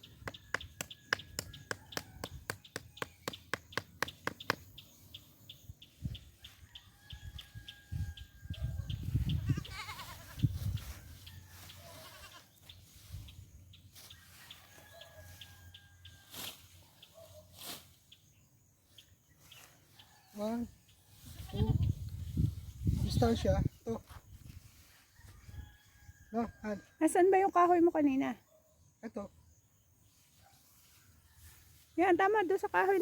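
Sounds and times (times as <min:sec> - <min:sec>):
goat bleating: 0:09.4 - 0:10.4.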